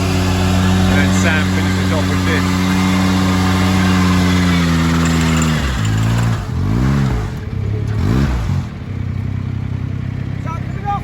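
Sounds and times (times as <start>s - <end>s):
power trowel engine revving: 0.0s - 8.8s.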